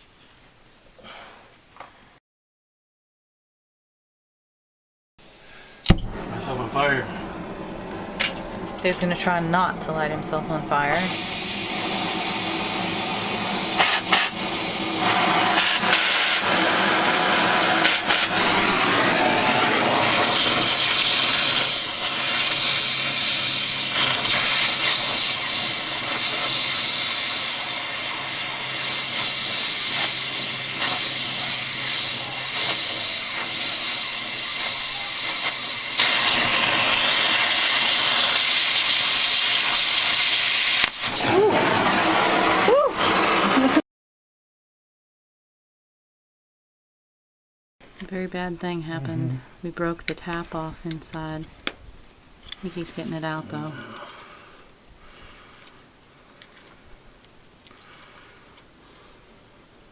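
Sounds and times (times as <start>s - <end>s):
cutting torch hissing: 5.3s - 43.8s, 52.5s - 56.8s.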